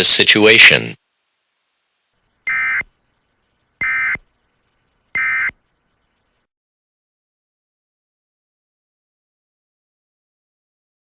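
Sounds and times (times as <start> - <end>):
digital data tone bursts: 2.4 - 6.3.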